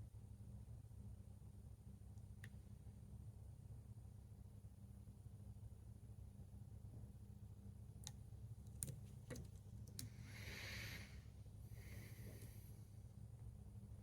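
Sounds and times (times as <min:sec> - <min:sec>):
soft hissing rustles: 0:09.0 - 0:13.0.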